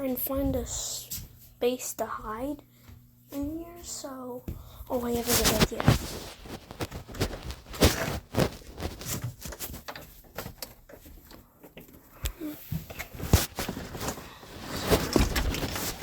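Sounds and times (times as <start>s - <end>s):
rustling: 5.0s - 11.2s, 12.9s - 16.0s.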